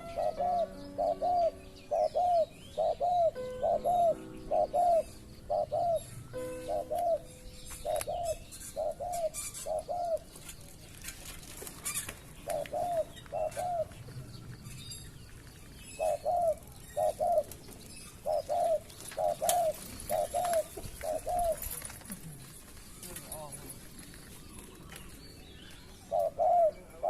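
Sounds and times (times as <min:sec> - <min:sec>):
dove cooing: 0:00.0 - 0:10.4, 0:11.8 - 0:14.0, 0:16.0 - 0:22.5, 0:26.0 - 0:27.0.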